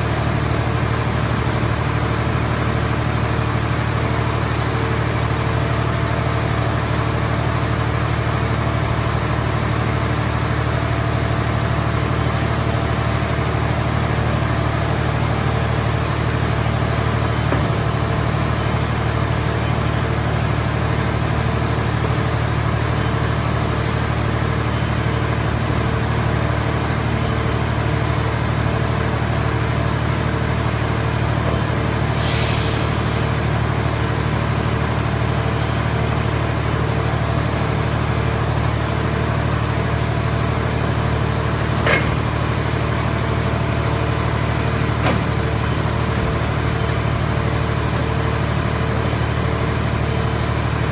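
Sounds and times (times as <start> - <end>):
hydraulic machine engine drone: 0.0 - 50.9
brief hiss: 32.2 - 33.0.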